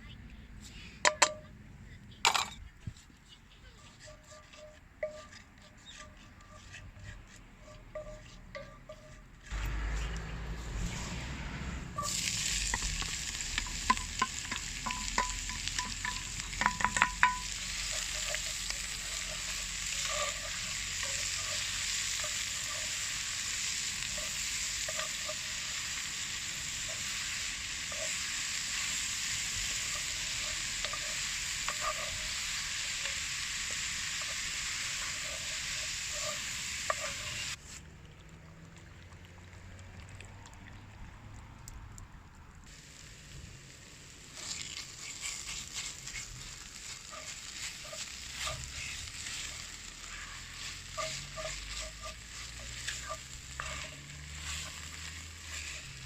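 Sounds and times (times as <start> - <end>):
metal utensil knocking on pan: 1.1 - 1.4, 13.6 - 17.6
food sizzling in a pan: 3.7 - 37.7, 42.7 - 56.0.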